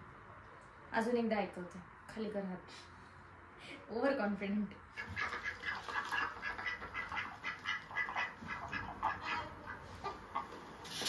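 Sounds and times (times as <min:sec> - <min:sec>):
ducks quacking through speaker: 0:04.9 - 0:10.8.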